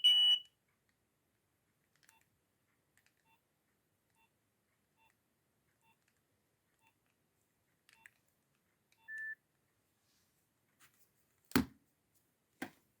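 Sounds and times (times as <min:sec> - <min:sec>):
mobile phone beeping: 0:00.0 - 0:00.4, 0:09.0 - 0:09.4.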